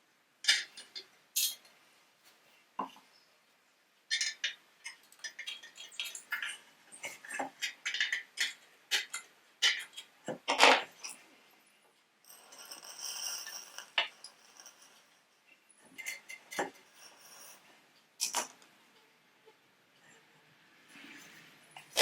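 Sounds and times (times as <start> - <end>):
metal parts clinking and knocking: 12.3 - 15.1.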